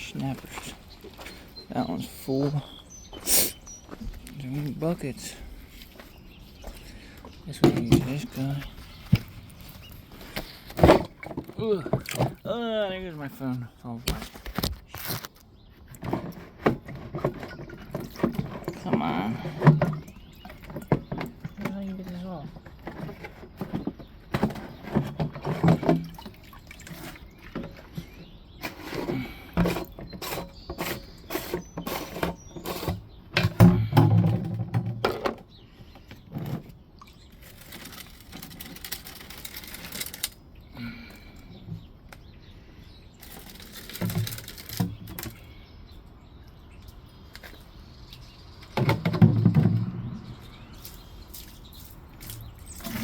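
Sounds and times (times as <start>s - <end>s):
containers knocking and clattering: 7.5s - 9.6s, 10.4s - 12.6s, 16.0s - 36.7s, 48.6s - 50.4s
water pouring and splashing: 24.9s - 28.0s, 50.7s - 53.0s.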